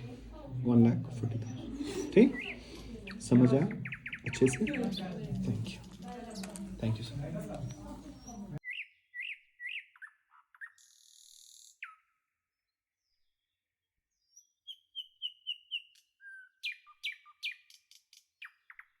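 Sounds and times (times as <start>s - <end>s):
birds chirping: 0.0s - 12.0s.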